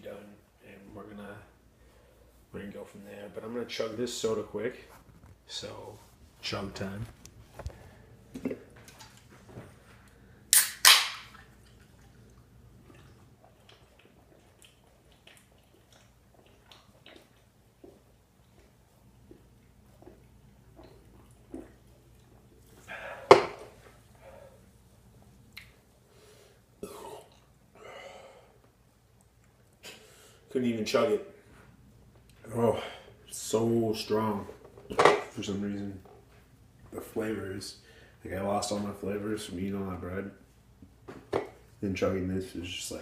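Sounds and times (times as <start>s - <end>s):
soda can opening pops: 10.5s - 11.3s.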